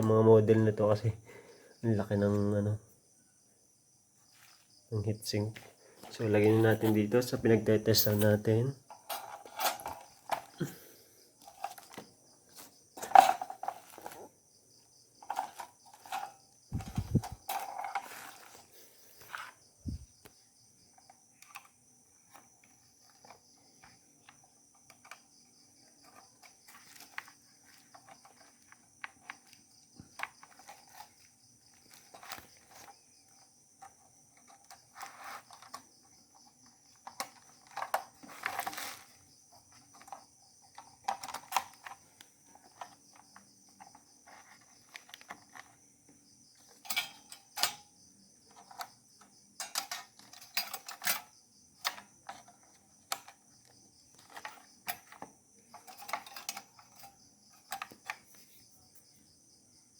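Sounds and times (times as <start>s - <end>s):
computer hardware clicks and rattles: 15.2s - 18.6s, 36.9s - 45.8s, 46.6s - 58.4s.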